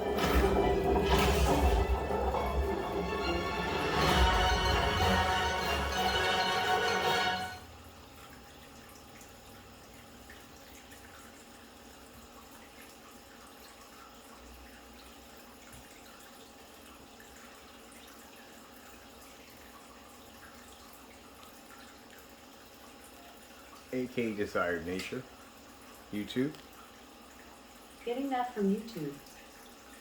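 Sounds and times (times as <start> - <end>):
low hum: 0.0 - 6.7.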